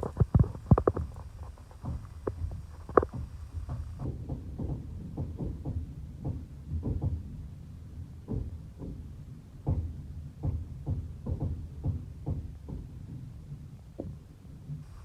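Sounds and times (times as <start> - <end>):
train wheels clacking over rail joints: 0.0 - 7.6
low rumble of moving train: 1.0 - 14.9.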